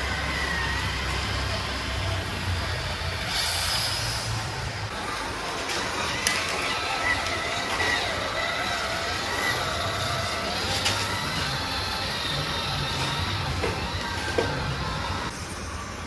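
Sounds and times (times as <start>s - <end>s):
small electric motor whining: 5.7s - 15.4s.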